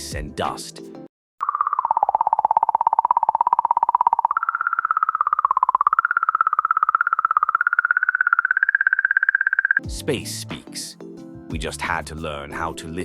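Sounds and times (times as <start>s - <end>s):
wavering electronic tone fluttering: 1.4s - 9.8s.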